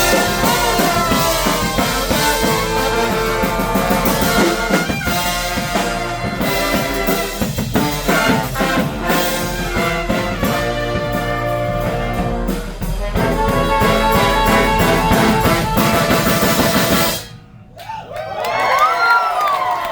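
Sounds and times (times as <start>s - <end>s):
crowd cheering and whooping: 0.0s - 5.3s, 17.7s - 19.9s
brass band playing: 0.0s - 17.6s.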